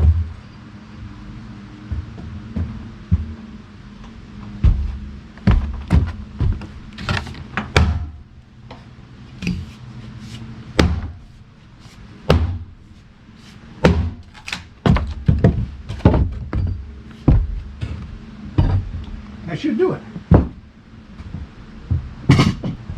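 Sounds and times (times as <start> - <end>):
low steady hum: 0.0 - 22.9
axe chopping log: 7.1 - 8.2, 10.8 - 11.2, 12.3 - 12.7, 13.8 - 16.2.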